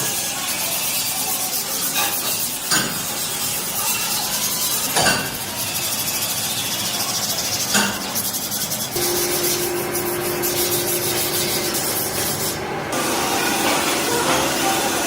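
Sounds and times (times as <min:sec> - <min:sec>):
hissing metalworking shop noise: 0:00.0 - 0:15.0.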